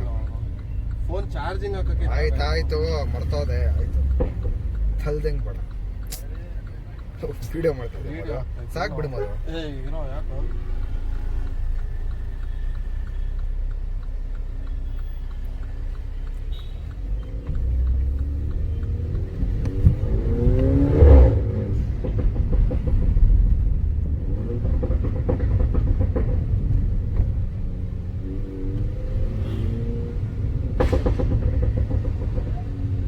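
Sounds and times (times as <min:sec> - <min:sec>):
exhaust pop: 0:00.0 - 0:07.4, 0:28.7 - 0:33.0
car engine accelerating: 0:00.0 - 0:33.0
exhaust crackles: 0:00.0 - 0:33.0.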